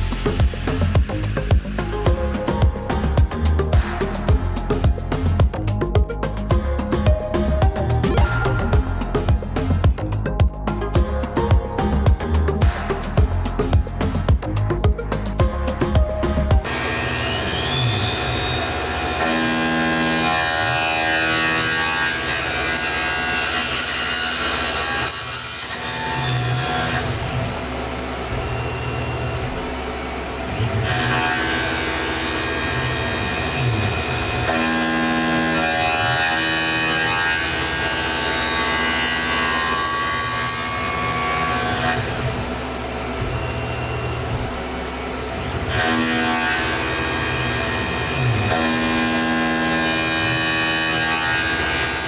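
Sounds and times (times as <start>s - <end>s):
cutter cutting metal: 0.0s - 52.0s
milling machine spindle whine: 16.6s - 52.0s.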